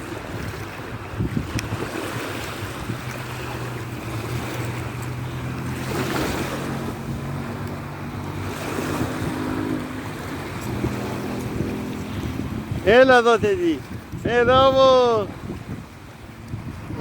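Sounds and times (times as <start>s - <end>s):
moving water: 0.0s - 17.0s
wind buffeting microphone: 0.0s - 17.0s.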